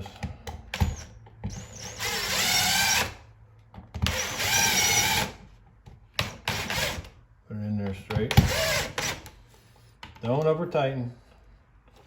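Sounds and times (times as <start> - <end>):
cordless drill driving screws: 0.8 - 3.2, 4.0 - 5.4, 8.3 - 9.3.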